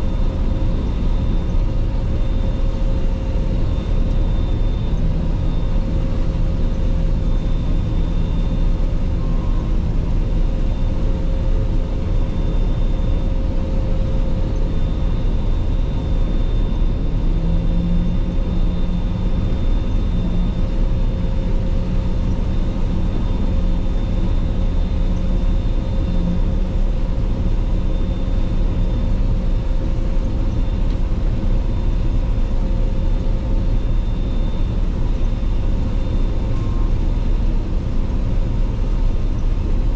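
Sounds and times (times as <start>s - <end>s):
combine harvester drone: 0.0s - 39.9s
high machine whine: 0.0s - 39.9s.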